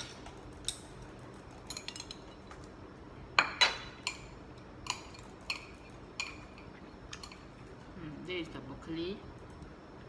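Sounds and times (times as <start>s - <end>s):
utensils clinking on a bowl: 0.0s - 2.7s, 3.4s - 7.7s.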